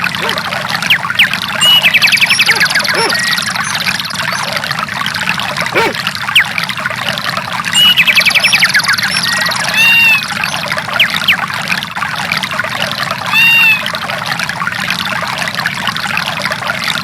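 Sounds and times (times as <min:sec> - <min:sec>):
arched animal call: 0:00.0 - 0:04.5, 0:05.7 - 0:06.0, 0:13.3 - 0:13.9
quick chirps: 0:00.0 - 0:04.6
trickling water: 0:00.0 - 0:17.0.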